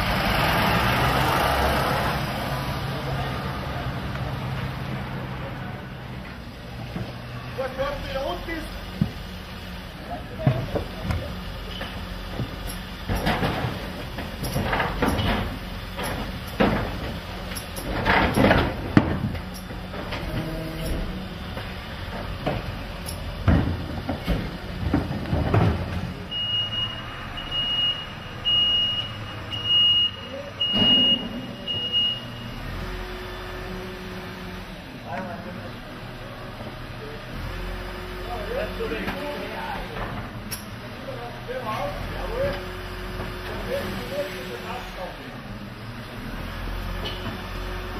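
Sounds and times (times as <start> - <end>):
truck engine running: 0.0 - 47.9
bins banging and clattering: 10.2 - 26.3, 30.6 - 31.8
reversing beeper: 26.3 - 32.8.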